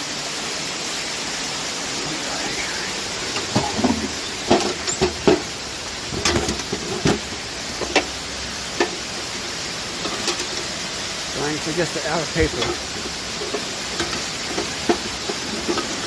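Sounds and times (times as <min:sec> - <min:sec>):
waterfall rushing: 0:00.0 - 0:16.0.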